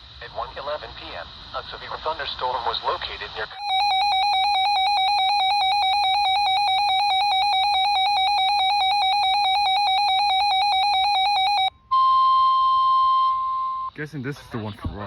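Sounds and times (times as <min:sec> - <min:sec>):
fast warbling alert beep: 0:03.6 - 0:13.3
steady warning alarm tone: 0:03.6 - 0:13.9.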